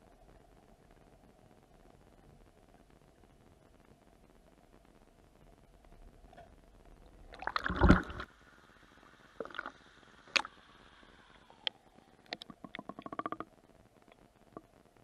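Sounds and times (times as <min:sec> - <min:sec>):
water sloshing and gurgling: 0:07.1 - 0:08.4, 0:09.4 - 0:10.6
water splashing: 0:07.2 - 0:08.4, 0:09.4 - 0:10.6.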